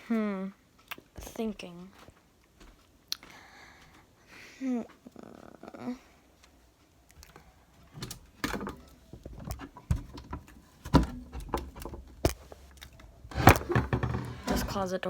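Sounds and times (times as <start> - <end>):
closet door knocking and rattling: 8.0 - 12.3, 13.1 - 14.8.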